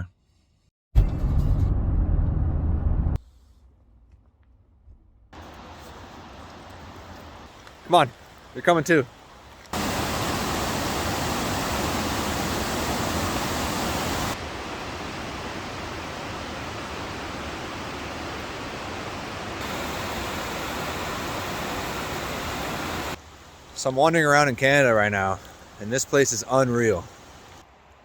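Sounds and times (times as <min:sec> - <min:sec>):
rushing water: 0:05.4 - 0:28.0.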